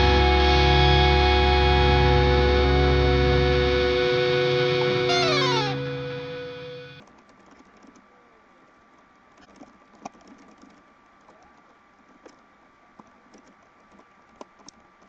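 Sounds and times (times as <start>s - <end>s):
music with distorted tones: 0.0s - 7.0s.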